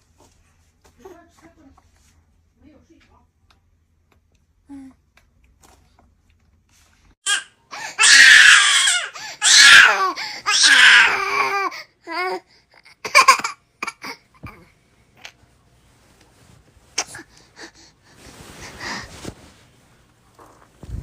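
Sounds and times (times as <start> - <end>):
baby crying: 7.3 - 14.2.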